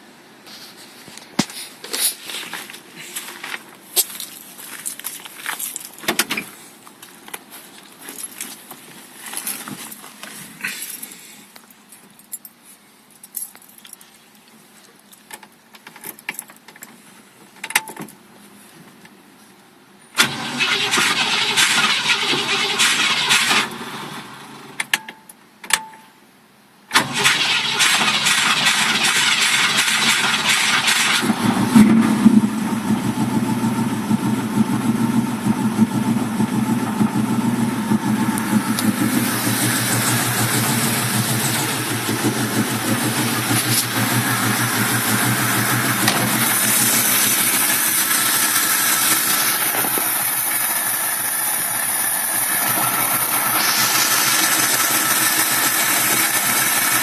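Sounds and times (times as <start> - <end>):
engine rough idle: 27.0 - 57.0
engine catching with bang: 31.6 - 32.6
starter cranking: 52.5 - 57.0.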